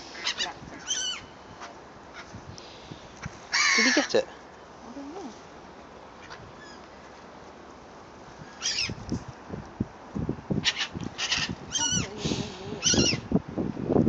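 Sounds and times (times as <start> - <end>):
seagull crying: 3.6 - 4.1, 8.6 - 8.9, 10.7 - 12.1, 12.8 - 13.2
goose hissing: 11.8 - 13.1.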